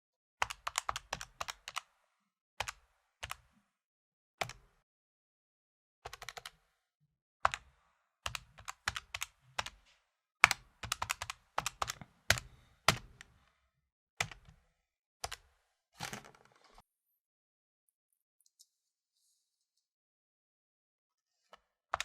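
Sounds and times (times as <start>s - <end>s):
calculator keys clicking: 10.8s - 13.3s.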